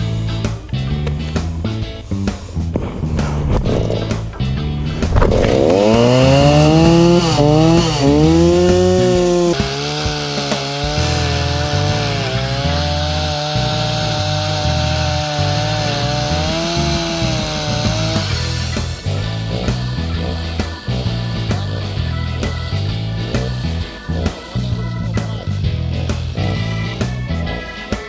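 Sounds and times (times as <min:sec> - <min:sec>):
chainsaw revving: 0:04.8 - 0:28.0.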